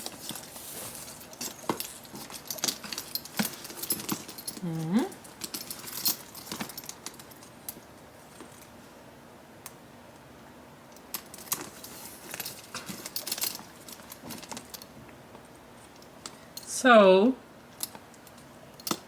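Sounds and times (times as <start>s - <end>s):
metal strap hardware clinking: 0.0s - 7.8s, 10.9s - 14.9s.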